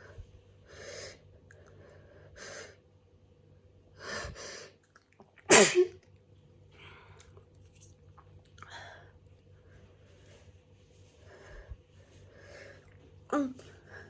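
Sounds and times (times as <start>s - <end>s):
person sneezing: 5.5s - 6.0s.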